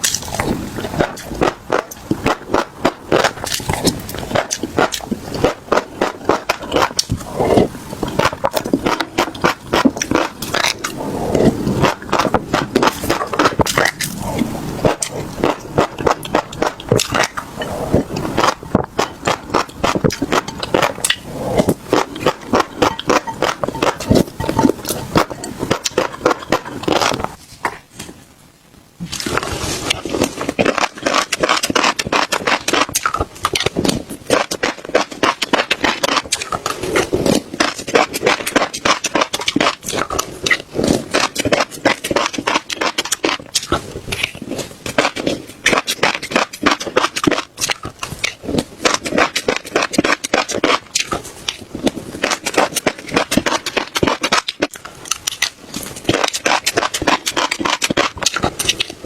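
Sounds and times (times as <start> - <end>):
chewing crunchy seeds: 0.0 - 27.4, 29.1 - 59.0.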